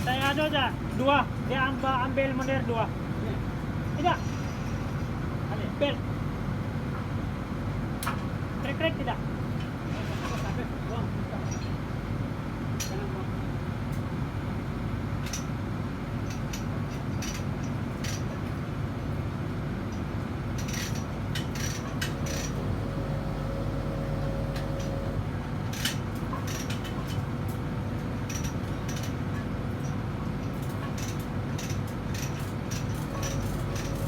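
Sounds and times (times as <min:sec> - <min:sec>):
low machinery drone: 0:21.8 - 0:25.9, 0:32.8 - 0:34.0.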